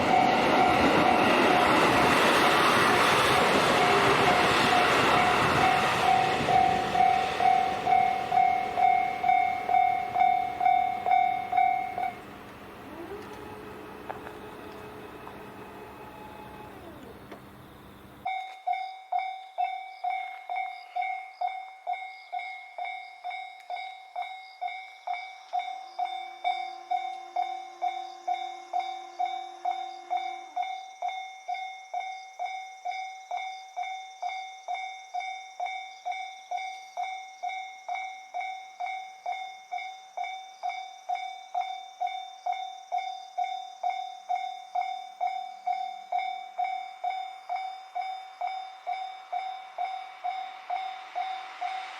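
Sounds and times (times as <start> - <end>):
level crossing bell ringing: 3.8 - 17.1, 18.2 - 21.4.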